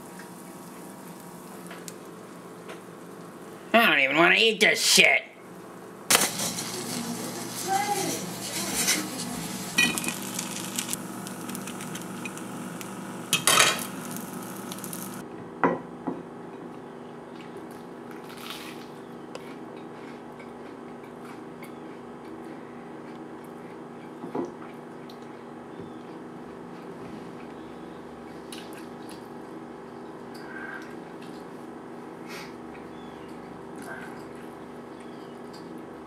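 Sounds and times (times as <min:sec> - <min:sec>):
steady low hum: 0:05.3 - 0:15.4
dishes and cutlery clinking: 0:08.0 - 0:10.2.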